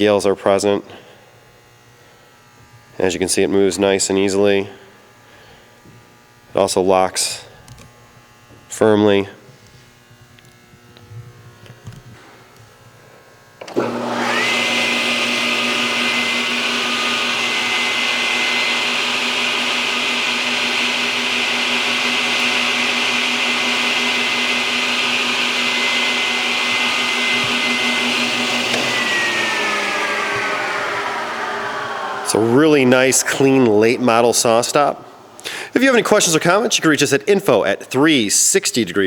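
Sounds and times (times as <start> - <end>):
table saw motor whine: 13.6 - 35.4.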